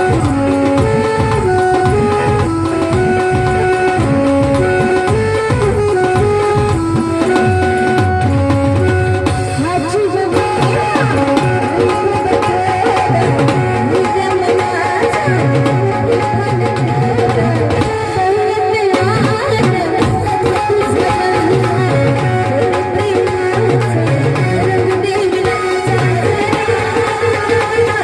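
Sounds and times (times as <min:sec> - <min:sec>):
wavering melodic line: 0:00.0 - 0:15.8
hand drums: 0:00.0 - 0:28.0.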